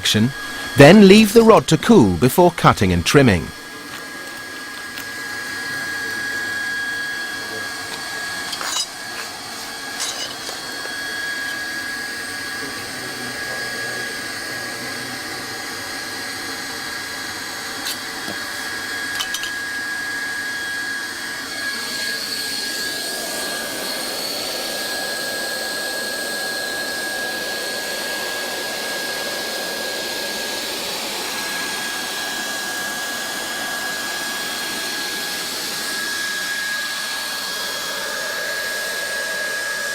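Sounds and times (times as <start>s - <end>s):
hot-air welding gun hissing: 0.0s - 0.8s, 7.3s - 12.1s.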